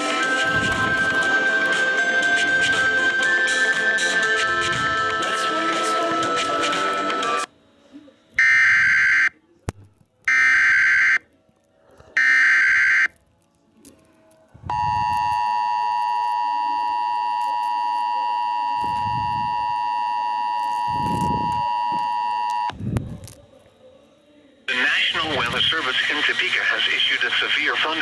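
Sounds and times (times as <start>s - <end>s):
screeching data bursts: 8.4s - 9.3s, 10.3s - 11.2s, 12.2s - 13.1s
two-tone attention signal: 14.7s - 22.7s.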